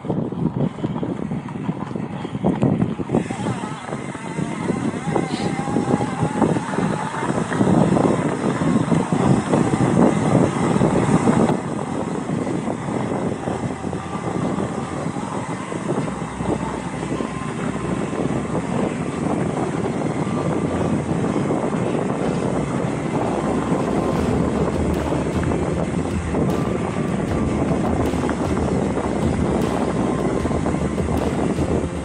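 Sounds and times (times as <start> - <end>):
wind rumble on microphone: 0.0 - 32.0
bike rattling: 18.6 - 32.0.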